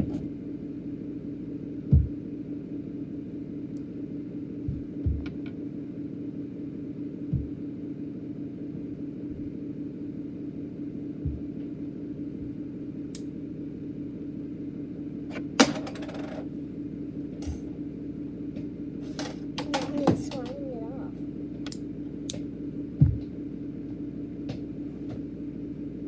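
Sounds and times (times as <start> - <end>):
steady low hum: 0.0 - 26.0
soft thumps: 23.0 - 23.3.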